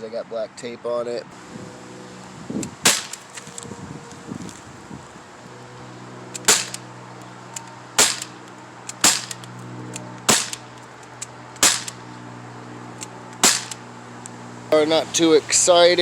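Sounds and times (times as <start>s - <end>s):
pellet gun shots: 2.8s - 3.5s, 6.4s - 6.9s, 8.0s - 9.5s, 10.3s - 10.7s, 11.6s - 12.0s, 13.4s - 13.8s.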